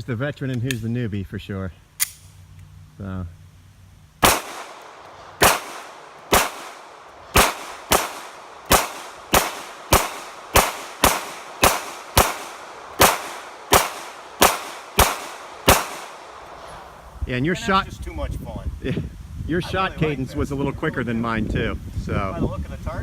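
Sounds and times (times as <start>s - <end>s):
pistol shots with echo: 4.2s - 16.5s.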